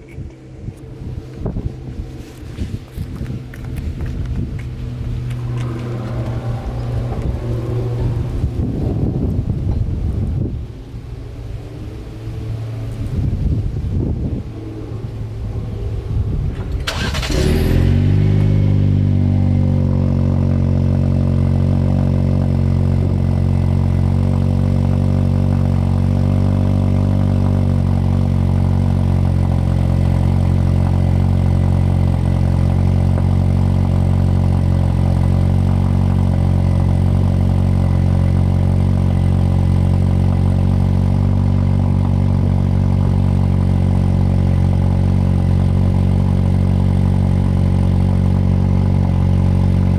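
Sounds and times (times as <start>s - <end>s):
car engine starting and idling: 0.0s - 49.9s
starter cranking: 16.5s - 18.8s.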